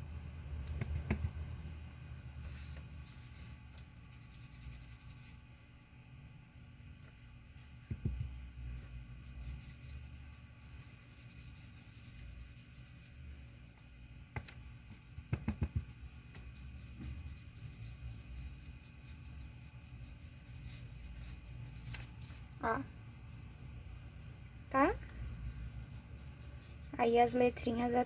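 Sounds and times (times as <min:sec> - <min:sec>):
paintbrush dry scratching: 0:02.4 - 0:05.4, 0:08.6 - 0:13.3, 0:15.8 - 0:24.4, 0:25.4 - 0:28.0
soft knock: 0:07.9 - 0:08.4
quick taps: 0:15.2 - 0:16.5.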